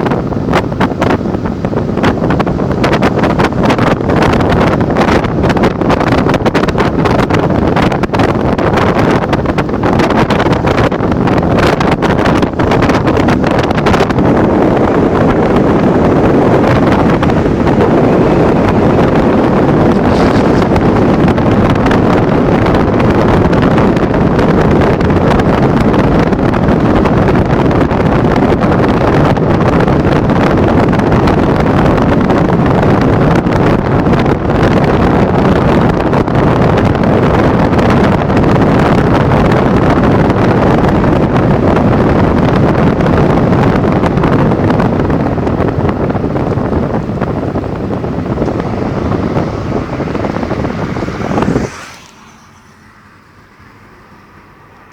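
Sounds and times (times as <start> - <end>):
car rushing noise: 0.0 - 54.9
wind buffeting microphone: 0.0 - 54.9.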